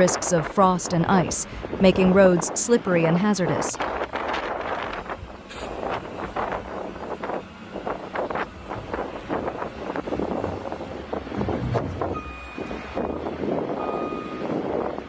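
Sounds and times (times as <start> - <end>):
vehicle swishes and rumbles: 3.8 - 15.0
electronic reversing beep: 12.0 - 13.2, 13.8 - 14.5.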